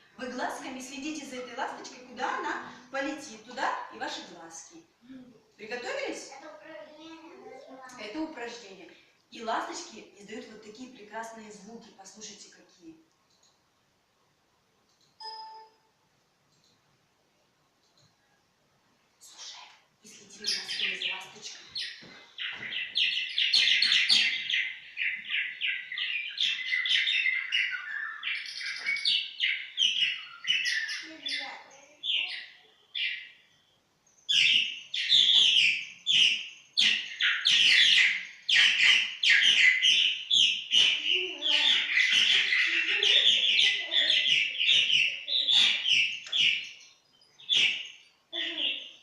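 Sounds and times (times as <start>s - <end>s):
swallow twittering: 19.2s - 33.4s, 34.2s - 49.0s.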